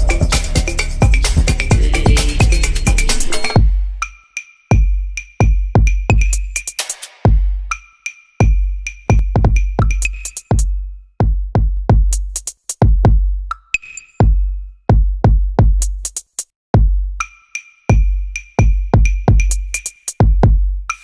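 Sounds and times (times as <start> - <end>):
electronic drum machine music: 0.0 - 10.8, 17.9 - 21.0.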